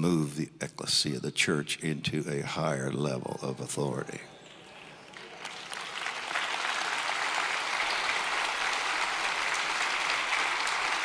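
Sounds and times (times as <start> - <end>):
congregation applauding: 4.6 - 11.0.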